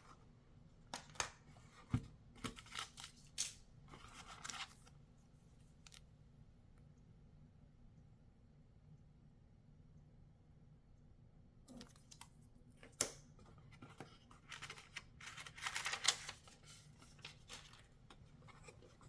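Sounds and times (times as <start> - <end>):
packaging rustling and scraping: 13.7 - 19.0.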